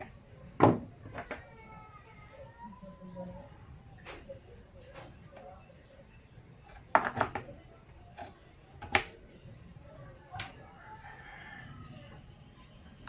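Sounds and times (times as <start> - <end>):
rooster crowing: 10.6 - 12.4.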